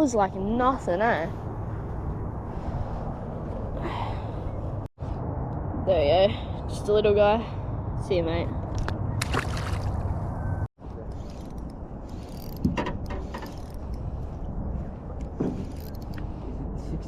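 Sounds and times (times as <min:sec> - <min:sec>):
wind rumble on microphone: 0:00.0 - 0:17.0
fishing reel ratcheting whirr: 0:11.1 - 0:12.7.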